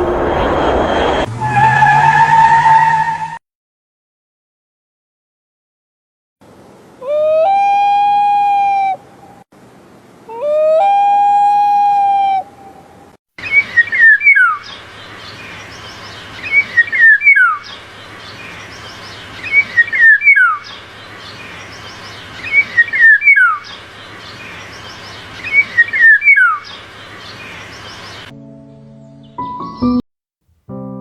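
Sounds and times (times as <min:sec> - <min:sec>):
steady background hiss: 0:06.4 - 0:28.3
songbird singing: 0:13.4 - 0:30.0.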